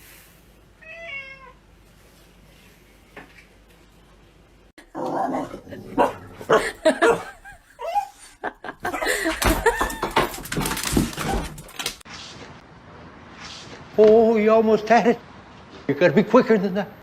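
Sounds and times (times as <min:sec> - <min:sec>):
dog barking: 0:06.0 - 0:07.4
person laughing: 0:06.4 - 0:10.4.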